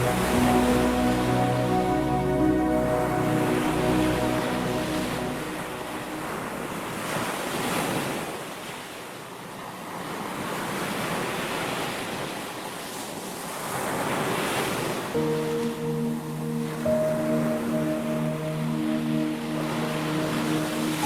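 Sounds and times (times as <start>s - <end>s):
soft sustained music tones: 0.0s - 7.6s, 15.2s - 21.0s
waves breaking: 0.0s - 21.0s.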